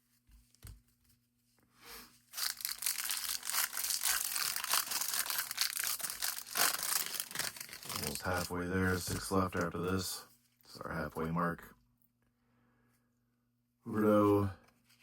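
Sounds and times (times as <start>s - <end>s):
foil wrapper tearing and crinkling: 2.3s - 8.5s.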